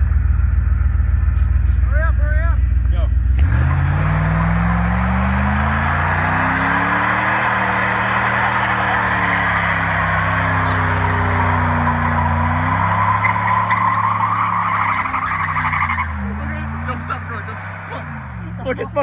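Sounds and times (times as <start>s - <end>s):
car engine revving hard: 3.4s - 18.5s.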